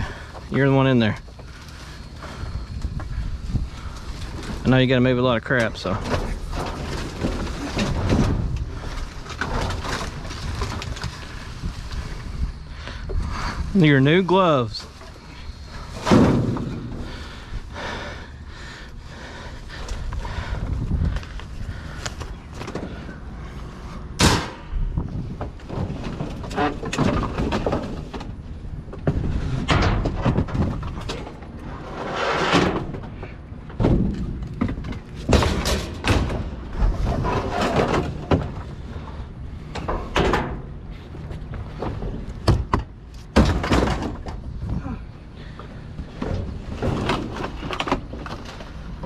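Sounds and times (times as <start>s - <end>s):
junk knocking and scraping: 0.0s - 13.7s, 14.3s - 18.0s, 18.7s - 49.0s
sharp bangs: 24.2s - 24.7s.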